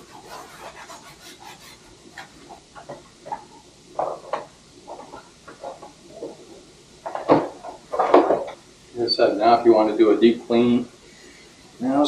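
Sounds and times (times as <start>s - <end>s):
rag rubbing and scraping metal: 0.0s - 2.5s.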